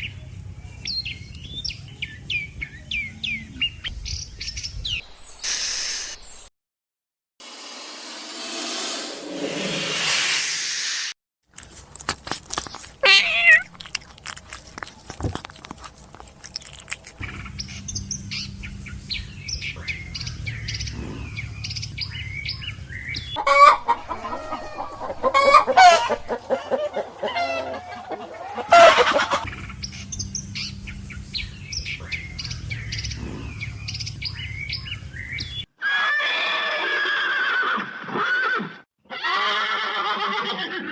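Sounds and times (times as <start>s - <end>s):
chickens clucking: 17.2s - 34.4s.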